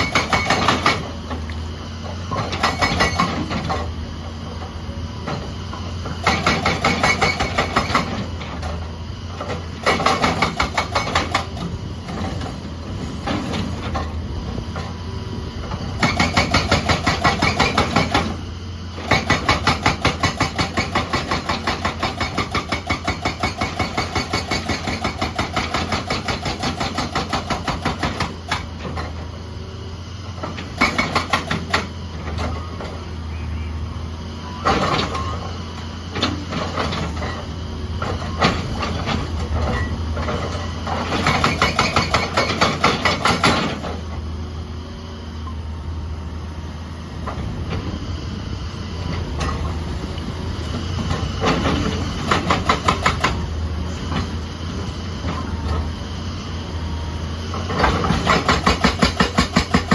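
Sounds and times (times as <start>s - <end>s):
hydraulic breaker hammer pounding: 0.0s - 1.2s, 2.3s - 3.9s, 6.1s - 8.8s, 9.5s - 12.5s, 15.9s - 18.4s, 19.0s - 29.1s, 30.5s - 32.4s, 38.0s - 44.1s, 51.0s - 53.4s, 57.7s - 59.9s
excavator engine drone: 0.0s - 59.9s.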